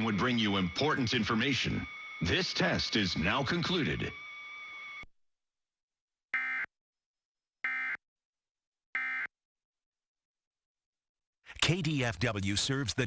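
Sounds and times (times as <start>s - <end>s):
buzzy digital data bursts: 0.0s - 5.0s.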